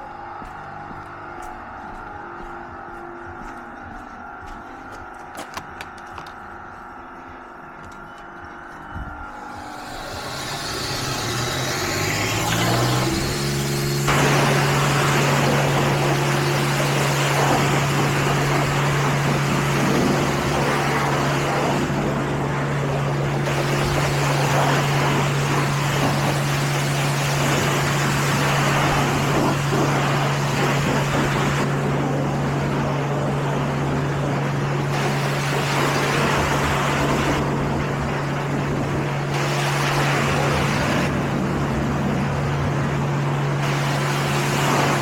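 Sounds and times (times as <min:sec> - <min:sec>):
low machine hum: 0:00.0 - 0:45.0
water spray hissing against car: 0:09.8 - 0:15.8.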